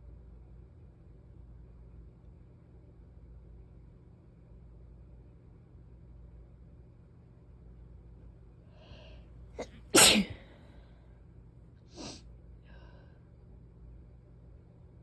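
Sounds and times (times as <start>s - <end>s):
person sneezing: 9.6s - 10.6s, 12.0s - 12.2s.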